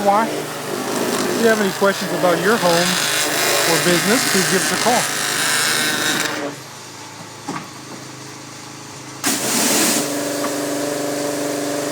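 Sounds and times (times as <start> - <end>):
pressure washer engine running: 0.0 - 6.6, 9.2 - 11.9.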